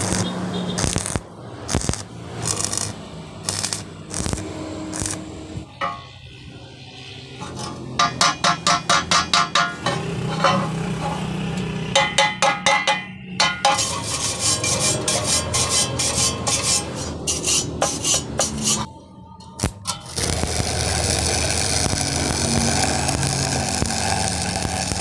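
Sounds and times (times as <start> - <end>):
scraping and rasping on metal: 7.4 - 11.3, 13.4 - 18.9
hammer tapping on steel: 8.0 - 10.7, 12.0 - 13.8.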